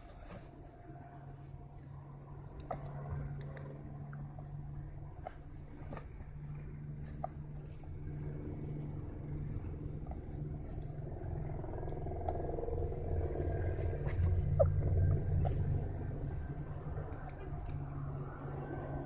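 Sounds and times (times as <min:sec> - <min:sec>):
car cabin rumble: 0:05.3 - 0:18.5.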